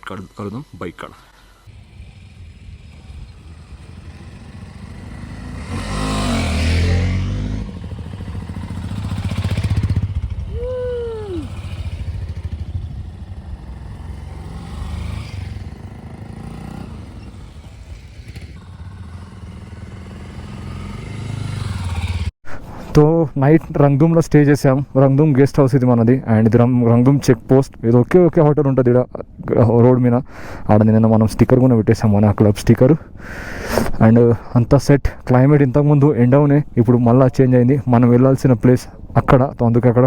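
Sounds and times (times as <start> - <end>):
motorcycle engines revving: 1.7 - 22.3
rising and falling tone: 8.8 - 12.6.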